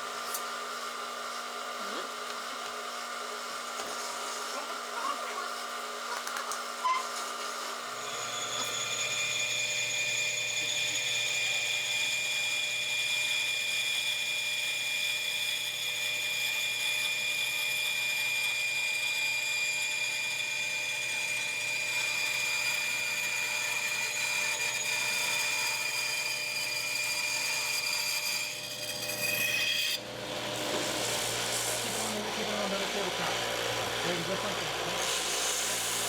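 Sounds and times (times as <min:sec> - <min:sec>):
power tool whining: 0:00.0 - 0:36.0.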